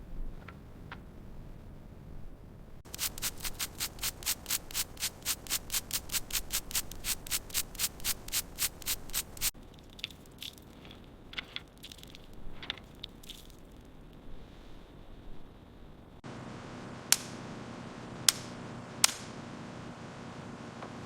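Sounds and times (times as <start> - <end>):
hand sanding strokes: 2.9 - 9.6.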